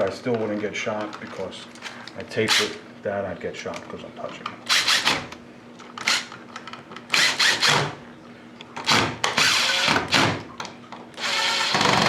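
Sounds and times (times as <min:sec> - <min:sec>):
cordless drill driving screws: 0:07.1 - 0:07.9, 0:08.9 - 0:10.3, 0:11.2 - 0:12.0.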